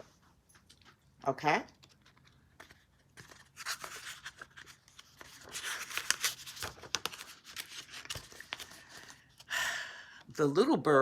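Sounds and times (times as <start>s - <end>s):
book pages turning with taps: 0.6s - 9.1s
paper rustling: 1.7s - 9.5s.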